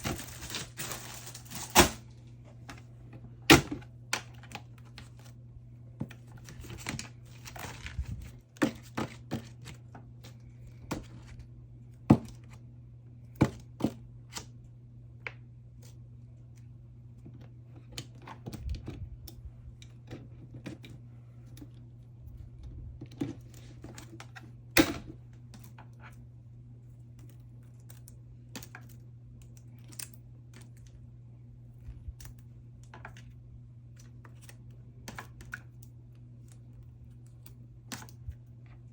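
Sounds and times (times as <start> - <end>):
plastic sleeves rustling: 0.0 - 11.6.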